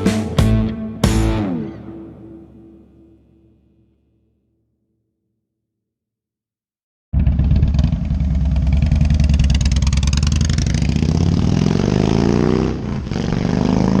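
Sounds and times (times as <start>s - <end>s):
motorcycle engine accelerating: 7.2s - 14.0s.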